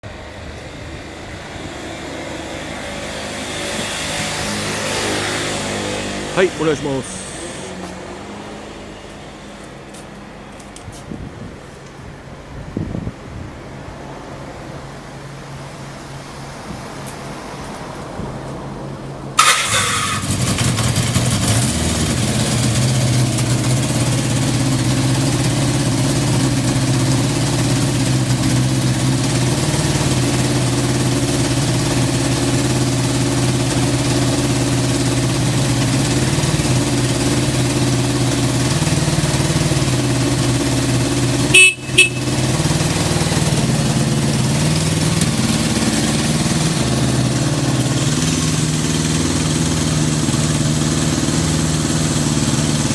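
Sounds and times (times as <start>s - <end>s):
motorcycle engine starting and idling: 19.3s - 52.9s.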